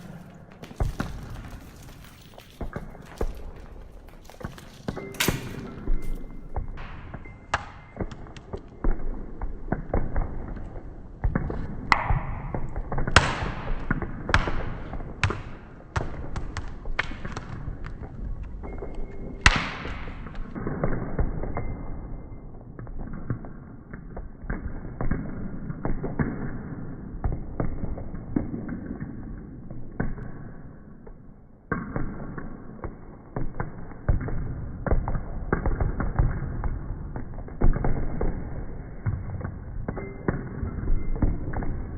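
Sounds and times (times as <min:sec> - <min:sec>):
bright ringing strikes: 0:04.8 - 0:08.9.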